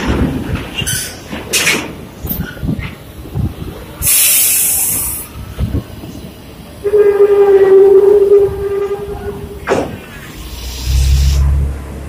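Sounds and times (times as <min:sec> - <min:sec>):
air brakes hissing: 0:04.0 - 0:05.6, 0:09.3 - 0:11.6.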